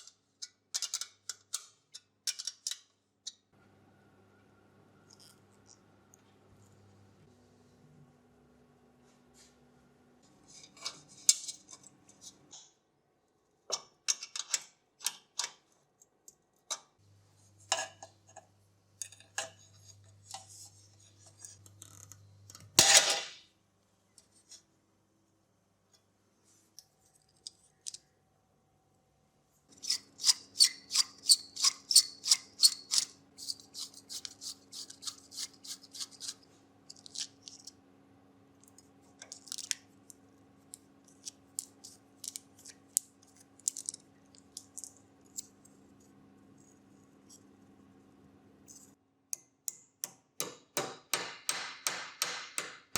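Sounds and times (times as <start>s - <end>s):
faint steady hum: 3.5s - 13.7s.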